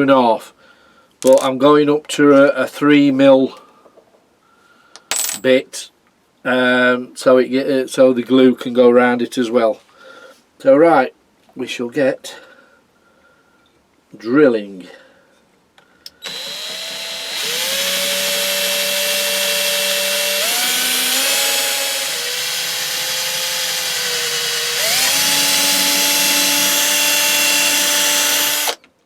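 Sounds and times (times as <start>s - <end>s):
electric drill drilling metal: 16.2s - 28.8s.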